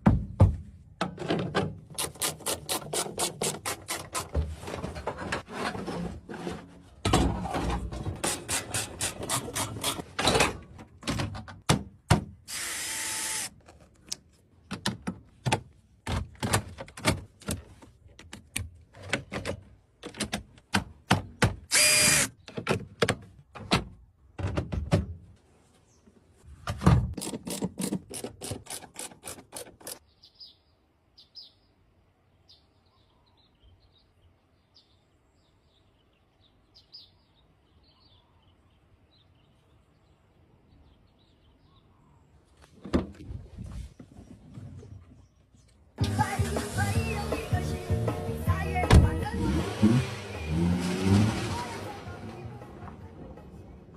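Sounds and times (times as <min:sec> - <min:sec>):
tools clicking and knocking: 0:27.2 - 0:30.0.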